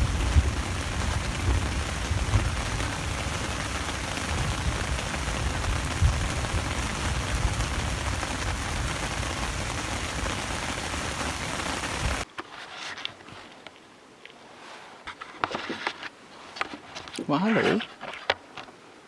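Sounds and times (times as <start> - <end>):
low rumble: 0.0 - 10.4
heavy rain falling: 0.0 - 12.3.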